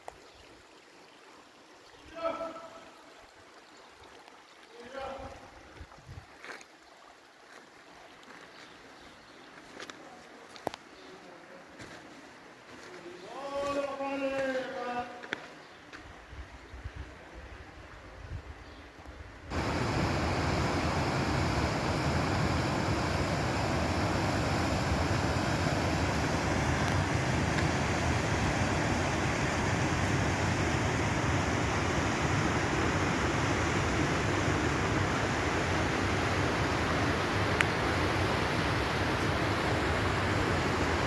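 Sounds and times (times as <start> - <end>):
rushing water: 0.0 - 9.2, 19.5 - 41.0.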